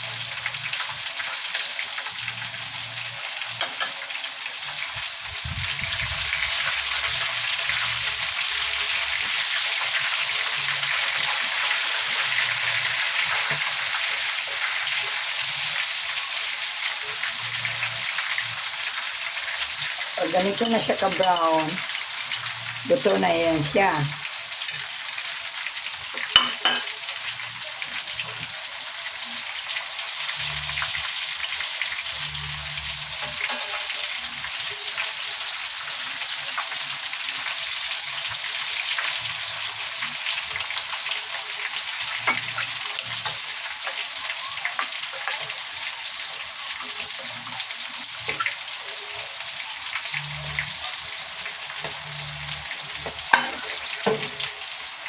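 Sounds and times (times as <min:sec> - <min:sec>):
chicken sizzling in oil: 0:00.0 - 0:55.0.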